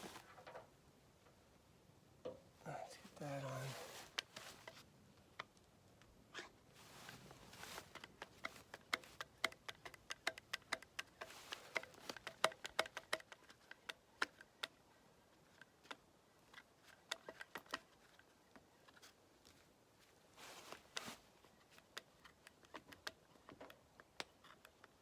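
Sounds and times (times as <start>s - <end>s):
grease gun clicking: 7.8s - 14.8s.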